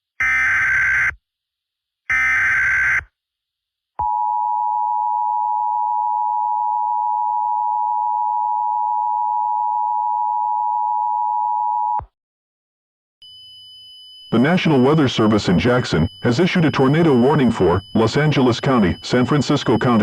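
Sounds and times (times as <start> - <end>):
two-tone attention signal: 13.2 - 20.0
harsh electronic warble: 14.3 - 20.0.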